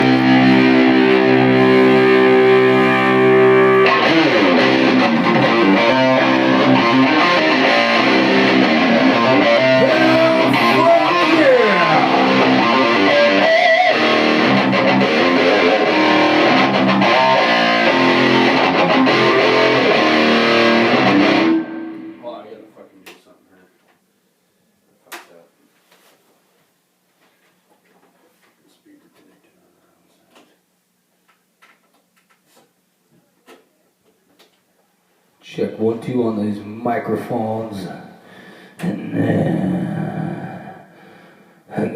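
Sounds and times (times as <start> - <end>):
electric guitar playing: 0.0 - 22.4.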